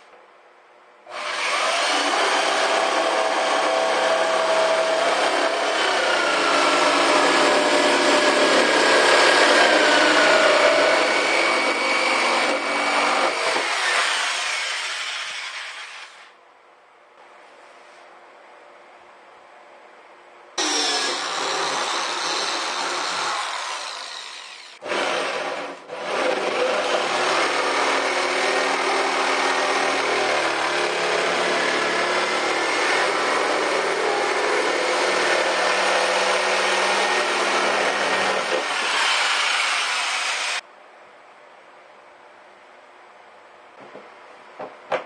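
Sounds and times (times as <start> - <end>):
power tool cutting: 1.1 - 16.3, 20.6 - 40.6.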